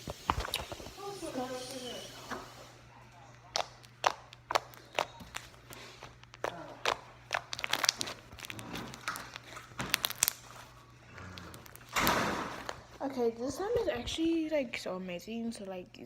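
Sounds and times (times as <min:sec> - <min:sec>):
slime squishing with air pops: 0:03.5 - 0:10.6, 0:11.6 - 0:13.0.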